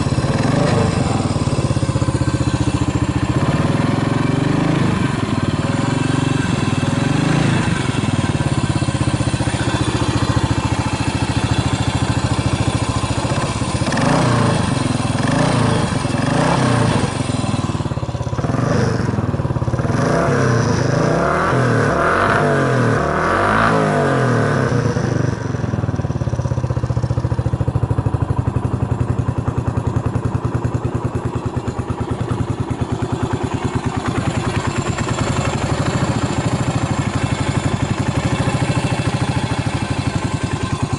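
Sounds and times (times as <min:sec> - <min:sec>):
motorcycle engine revving and idling: 0:00.0 - 0:40.9.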